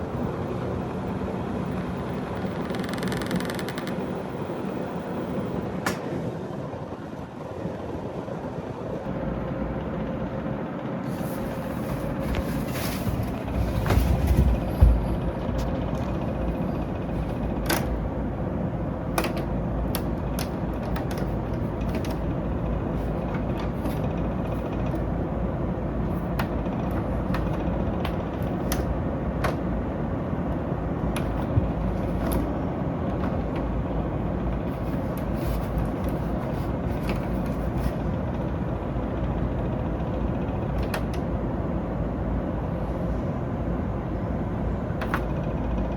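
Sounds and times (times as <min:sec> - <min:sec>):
air conditioner airflow noise: 0:00.0 - 0:45.9
sharp irregular clicks: 0:02.4 - 0:04.1.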